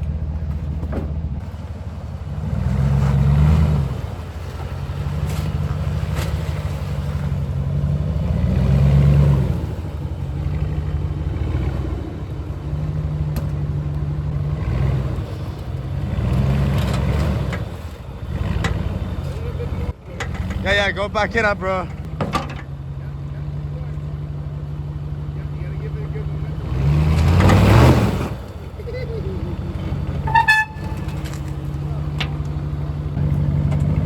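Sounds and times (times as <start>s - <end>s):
pickup truck engine revving: 0.0s - 34.0s.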